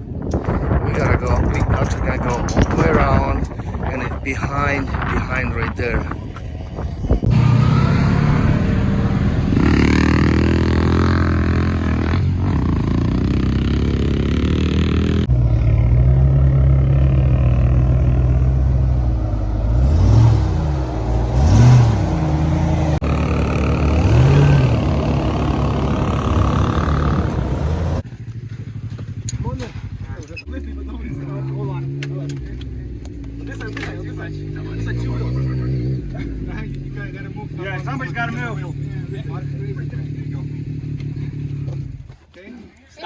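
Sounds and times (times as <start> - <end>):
vehicle engine running: 6.2 - 42.2
engine revving: 7.1 - 28.2, 28.8 - 42.1.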